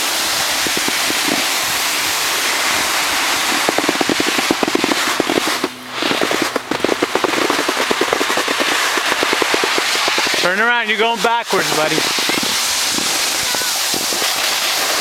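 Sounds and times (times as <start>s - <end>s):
skis sliding on snow: 0.0s - 15.0s
wind rushing: 0.6s - 15.0s
rapid rattling chatter: 6.4s - 15.0s.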